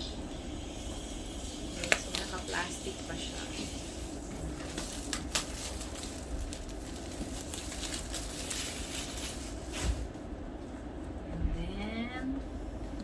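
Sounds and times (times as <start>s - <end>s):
plastic wrap and cardboard rustling: 4.5s - 10.1s.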